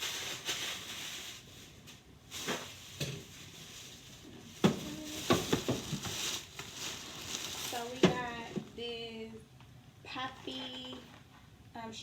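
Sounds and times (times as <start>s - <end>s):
shopping bags rustling: 0.0s - 8.8s
items knocking when set down: 4.6s - 6.2s.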